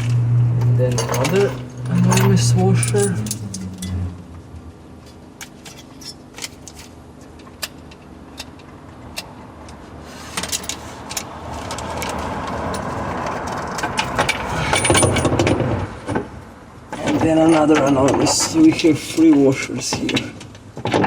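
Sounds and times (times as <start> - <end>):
rushing noise: 0.0 - 5.3
metal washers clinking: 0.9 - 4.0, 5.0 - 9.3.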